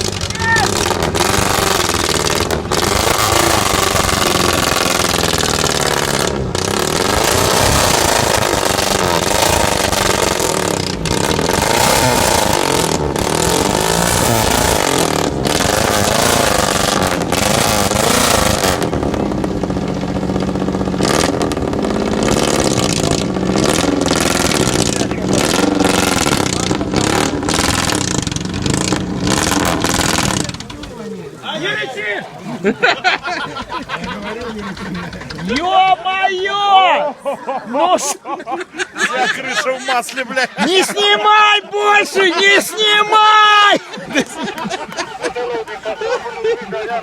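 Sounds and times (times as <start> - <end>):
vehicle engine revving: 0.0 - 31.6, 32.9 - 35.7.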